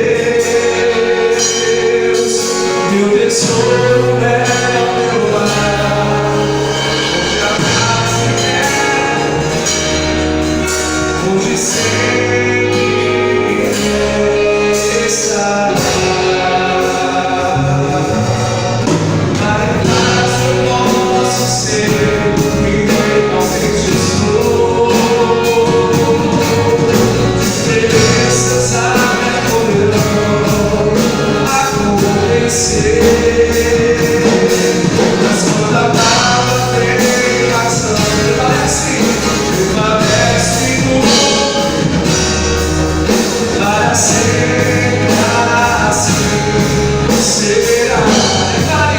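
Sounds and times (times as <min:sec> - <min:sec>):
gospel band playing: 0:00.0 - 0:48.9
people singing: 0:00.0 - 0:48.9
steady drum beat: 0:00.0 - 0:48.9.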